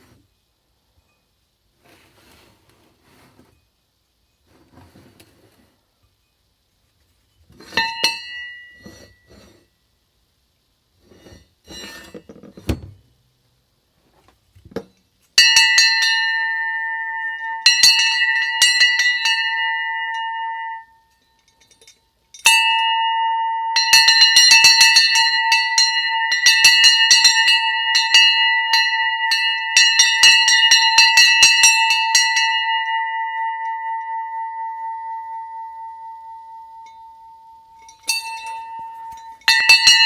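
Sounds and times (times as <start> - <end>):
church bell ringing: 15.4 - 21.0, 22.4 - 40.0.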